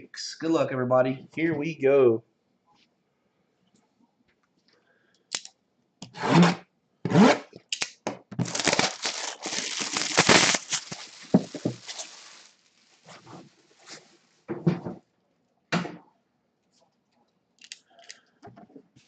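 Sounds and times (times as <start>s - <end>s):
packaging tearing and crinkling: 7.7s - 14.1s.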